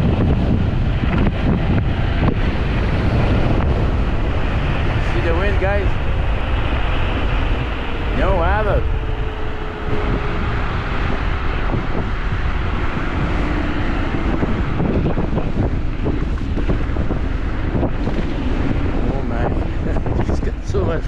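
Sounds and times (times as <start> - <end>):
wind buffeting microphone: 0.0 - 21.0
faint motor whine: 0.7 - 21.0.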